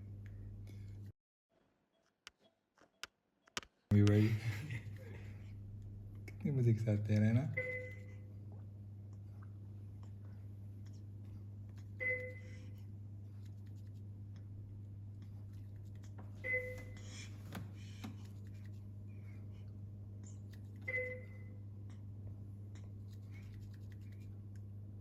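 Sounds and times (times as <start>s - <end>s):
steady low hum: 0.0s - 1.1s, 3.9s - 25.0s.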